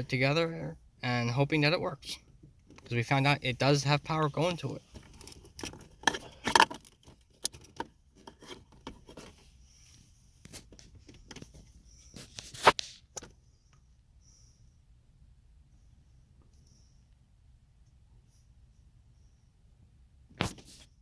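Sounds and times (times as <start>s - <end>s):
wires and tools handled: 4.3s - 9.5s.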